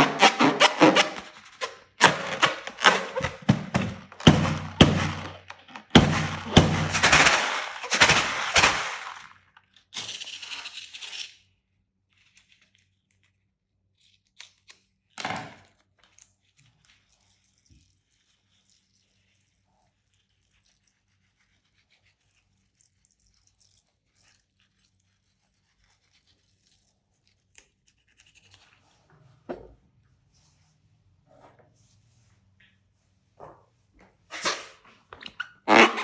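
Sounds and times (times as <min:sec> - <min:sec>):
slime crackling and popping: 0:02.0 - 0:09.4.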